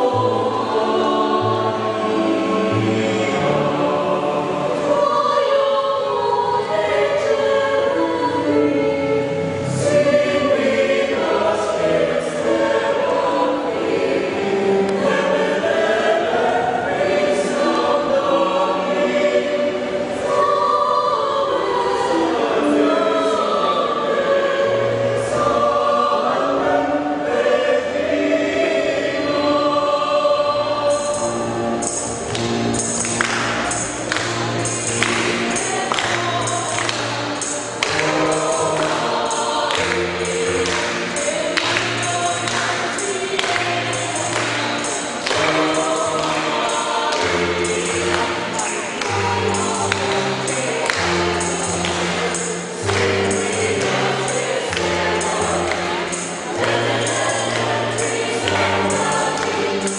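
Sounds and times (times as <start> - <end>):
church choir singing a hymn: 0.0 - 59.9.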